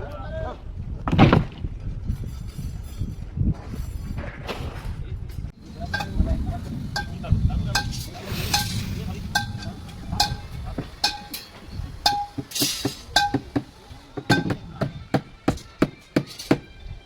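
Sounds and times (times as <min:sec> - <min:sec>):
metal clinking on metal: 0:05.7 - 0:14.7, 0:15.4 - 0:16.7.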